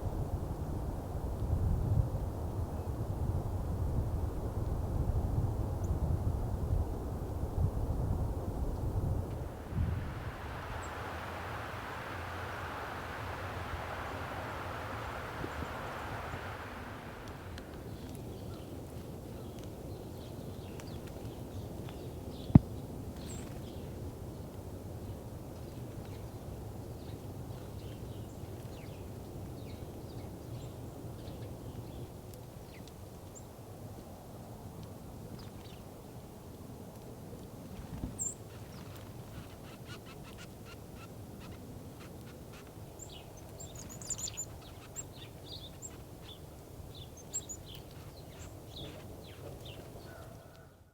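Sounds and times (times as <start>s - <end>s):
steady low rumble: 8.2s - 18.0s
small birds chirping: 9.4s - 22.6s, 38.0s - 50.6s.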